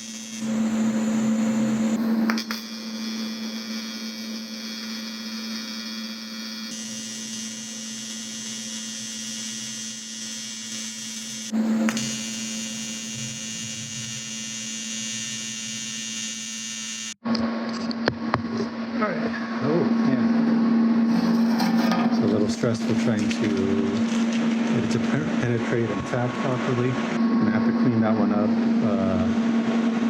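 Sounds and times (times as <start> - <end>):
welding arc buzzing: 0.0 - 17.2, 21.1 - 27.6.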